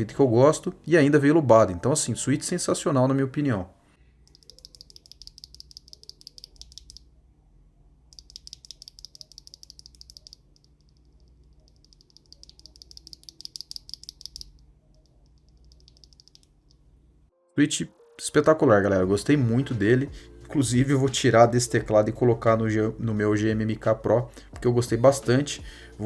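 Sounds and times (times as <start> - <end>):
mechanical keyboard keystrokes: 4.3 - 7.0, 8.2 - 10.4.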